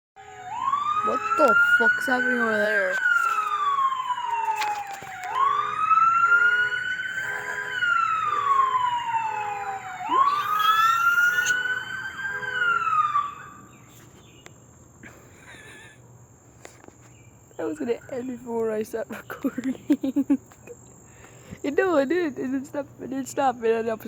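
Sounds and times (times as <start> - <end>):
faint pulsing beeping: 0.2 - 12.8
siren wailing: 0.2 - 13.7.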